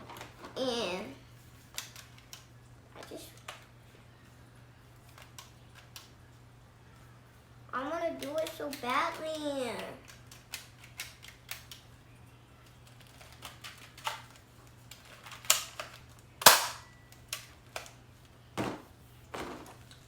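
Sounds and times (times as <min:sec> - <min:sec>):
plastic toy parts clicking: 0:01.7 - 0:02.5, 0:08.2 - 0:11.8, 0:12.6 - 0:18.0.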